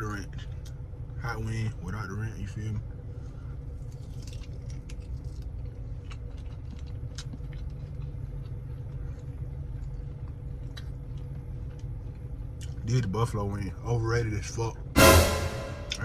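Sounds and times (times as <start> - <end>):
chewing clicks and smacks: 3.9 - 13.1.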